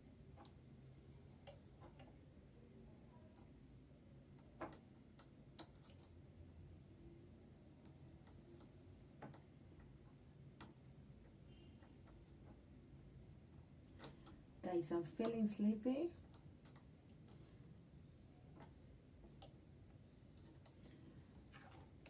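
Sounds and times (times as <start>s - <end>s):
faint clicks and taps of parts: 0.3s - 0.6s, 1.3s - 2.2s, 3.2s - 3.6s, 4.3s - 6.2s, 7.8s - 12.8s, 13.5s - 14.5s, 16.2s - 17.7s, 18.5s - 22.0s.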